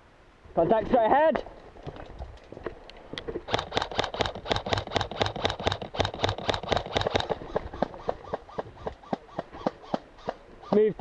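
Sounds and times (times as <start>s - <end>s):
airsoft gun shots: 3.5s - 7.4s.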